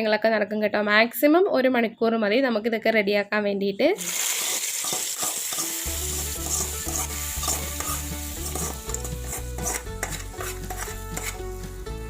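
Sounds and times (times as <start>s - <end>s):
food sizzling in a pan: 4.0s - 11.9s
background music with bass: 5.8s - 12.0s.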